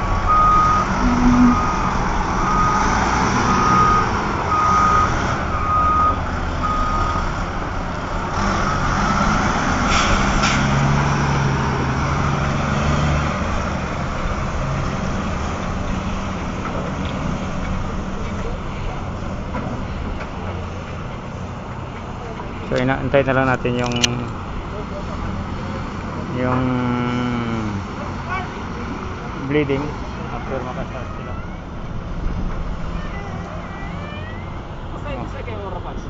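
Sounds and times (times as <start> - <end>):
low machinery drone: 0.0 - 2.8
excavator warning beeper: 0.3 - 2.9, 3.5 - 7.3.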